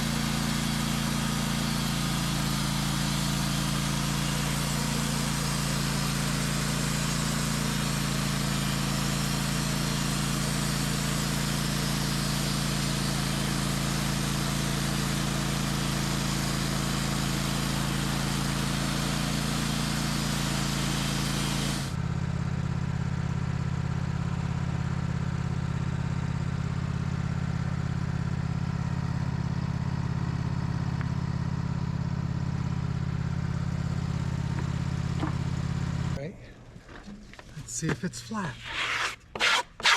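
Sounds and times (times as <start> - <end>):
saw blade hissing through wood: 0.0 - 15.0, 17.0 - 22.0, 38.5 - 39.9
sawmill motor hum: 0.0 - 22.1, 27.5 - 39.9.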